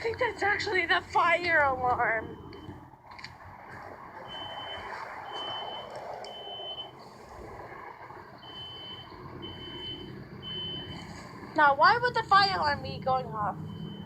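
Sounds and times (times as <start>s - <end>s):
steady background noise: 0.0s - 14.0s
fire alarm beeping: 4.2s - 6.9s, 8.4s - 11.0s, 13.6s - 14.0s.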